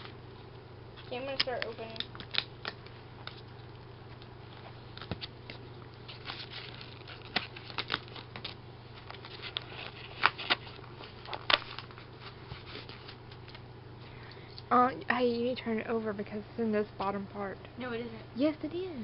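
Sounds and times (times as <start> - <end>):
cardboard packing crinkling: 4.9 - 13.6.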